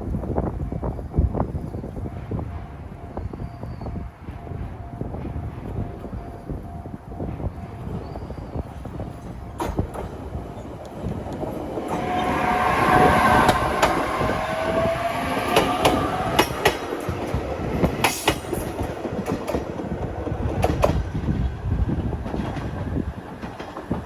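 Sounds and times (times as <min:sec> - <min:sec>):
train wheels clicking over rail joints: 0:08.7 - 0:24.0.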